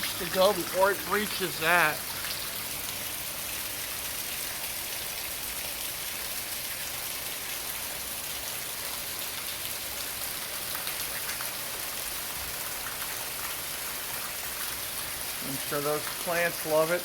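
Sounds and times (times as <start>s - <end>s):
heavy rain hissing: 0.0s - 5.5s, 12.3s - 17.0s.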